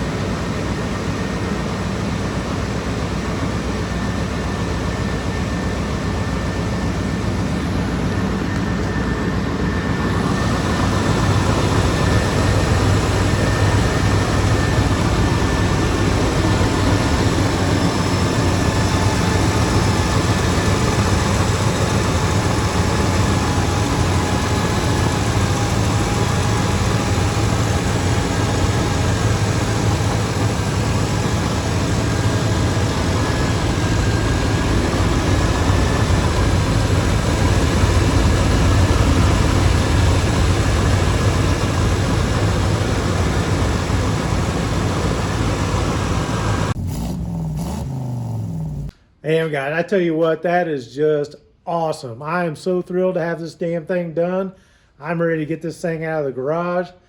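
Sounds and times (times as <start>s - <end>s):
faint steady whine: 0.0s - 46.8s
car engine running: 5.0s - 48.9s.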